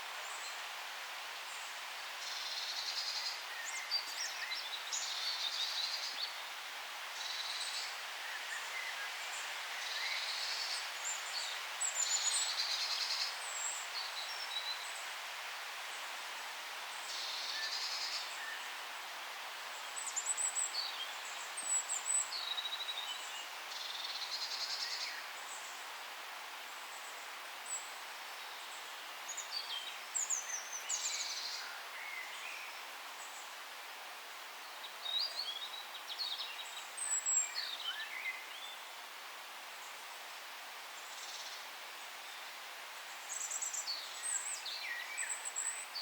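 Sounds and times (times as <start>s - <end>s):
soft background hiss: 0.0s - 46.0s
forest songbirds singing: 26.9s - 33.6s, 34.6s - 39.1s, 40.9s - 46.0s.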